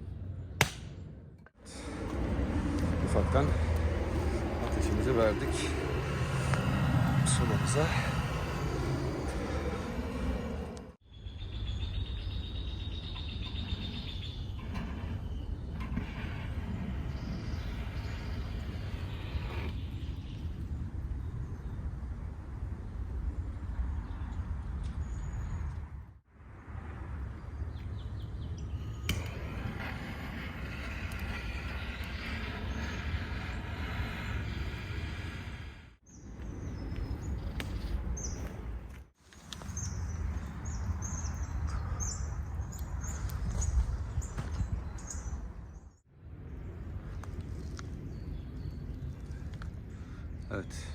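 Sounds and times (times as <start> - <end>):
steady low rumble: 0.0 - 11.0
low wind rumble on microphone: 1.7 - 39.0, 39.6 - 50.6.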